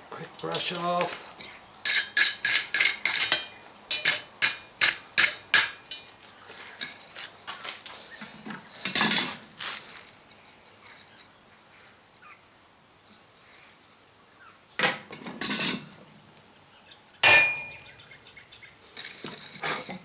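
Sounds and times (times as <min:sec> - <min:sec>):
metal tools clinking and scraping: 0:00.4 - 0:07.2, 0:08.8 - 0:09.4, 0:17.2 - 0:17.8
hammer striking punch into steel: 0:17.2 - 0:17.8.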